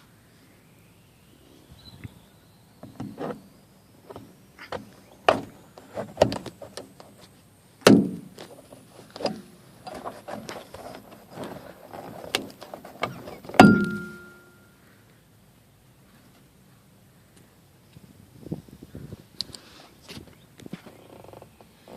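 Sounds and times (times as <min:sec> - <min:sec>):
metallic clank ringing: 0:13.6 - 0:14.8.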